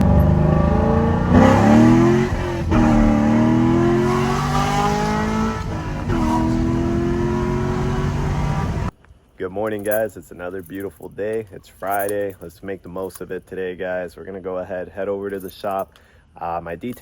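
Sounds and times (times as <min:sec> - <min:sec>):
car engine accelerating: 0:00.0 - 0:08.9.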